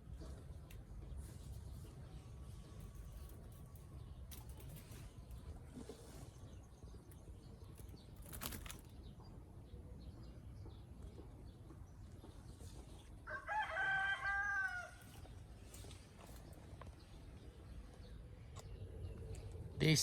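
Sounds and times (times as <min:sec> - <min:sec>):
rooster crowing: 0:13.2 - 0:15.1.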